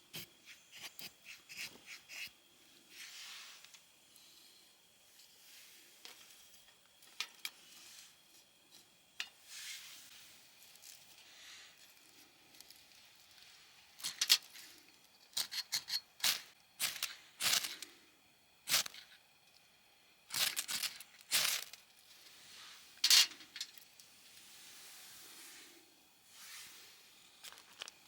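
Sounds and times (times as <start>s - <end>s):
sharp crinkling and tearing: 20.3s - 21.8s.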